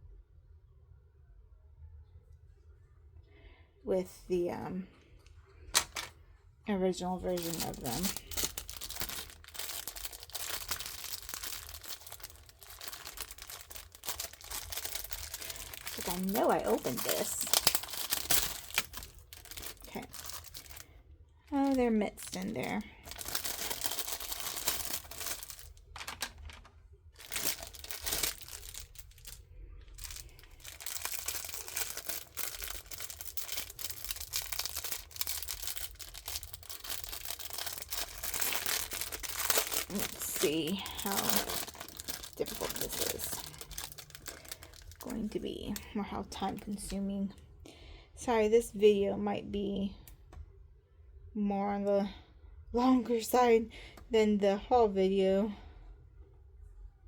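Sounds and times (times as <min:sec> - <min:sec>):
plastic packaging crinkling: 0:05.8 - 0:06.1, 0:07.0 - 0:47.0.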